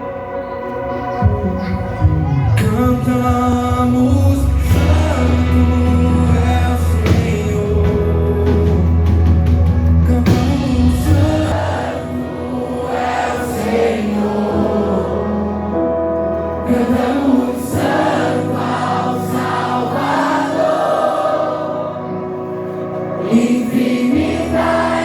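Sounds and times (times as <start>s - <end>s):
band with sustained bass: 0.0s - 12.9s
choir singing: 4.4s - 9.1s, 10.2s - 25.0s.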